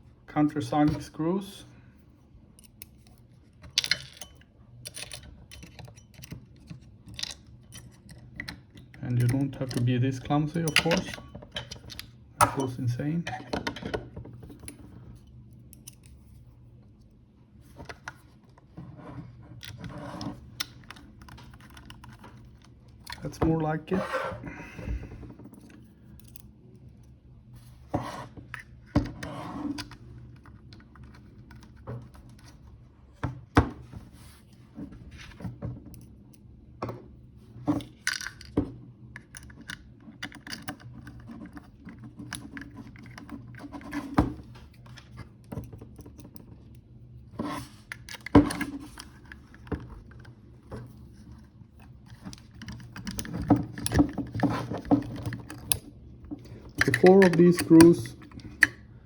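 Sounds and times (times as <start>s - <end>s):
metal parts being handled: 2.6s - 16.4s, 52.0s - 58.8s.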